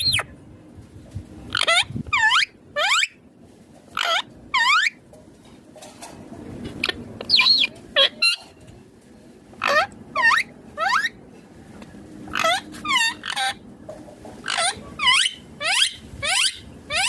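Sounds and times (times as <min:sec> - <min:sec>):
parakeet calling: 0:00.0 - 0:00.3, 0:01.5 - 0:03.2, 0:04.0 - 0:05.0, 0:06.8 - 0:08.5, 0:09.6 - 0:11.2, 0:12.3 - 0:13.6, 0:14.4 - 0:17.0
parakeet chirps: 0:00.0 - 0:00.3, 0:01.5 - 0:03.2, 0:04.0 - 0:05.0, 0:06.8 - 0:08.5, 0:09.6 - 0:11.2, 0:12.3 - 0:13.6, 0:14.4 - 0:17.0.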